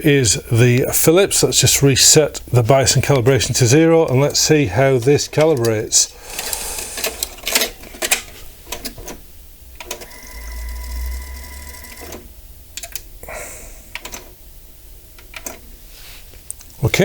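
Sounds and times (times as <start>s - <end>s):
cassette deck clicking and whirring: 5.3s - 13.1s.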